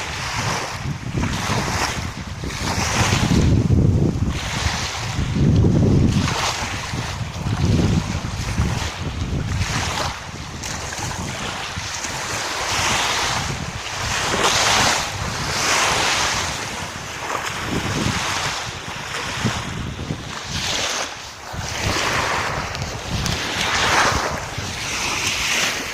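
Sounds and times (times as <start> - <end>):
sea waves washing and splashing: 0.0 - 25.9
wind buffeting microphone: 0.0 - 25.9.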